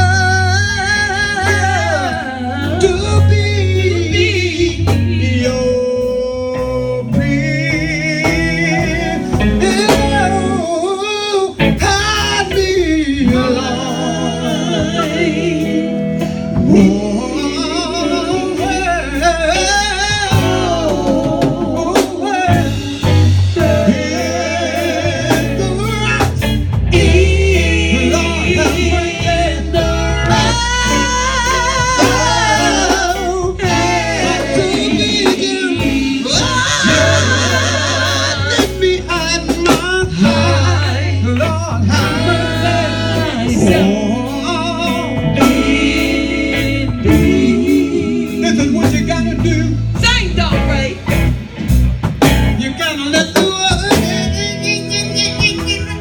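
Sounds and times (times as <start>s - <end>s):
band backing with bass: 0.0s - 56.0s
man singing gospel: 0.0s - 56.0s.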